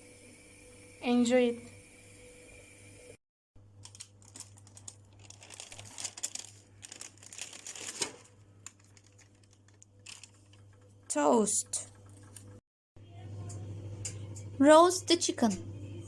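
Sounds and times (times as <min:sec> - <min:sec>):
low electrical hum: 0:00.0 - 0:16.0
crinkling and crackling: 0:03.8 - 0:11.2.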